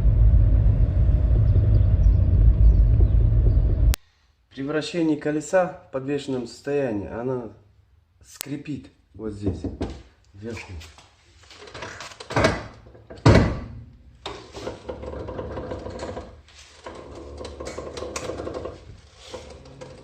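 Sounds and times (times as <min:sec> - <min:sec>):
strut bearing creaking and grinding: 0:11.5 - 0:20.0
loud thumps: 0:12.4 - 0:16.0.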